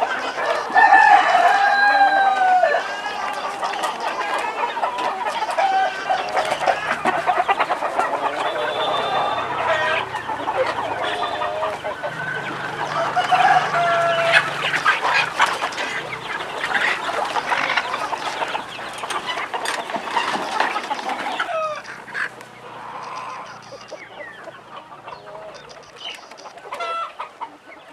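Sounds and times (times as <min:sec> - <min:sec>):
chickens clucking: 0:00.0 - 0:27.9.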